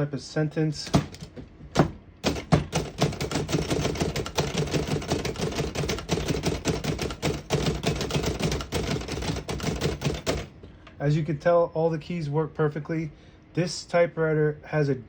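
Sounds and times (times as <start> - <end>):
typewriter muted key strikes: 0.9 - 10.5.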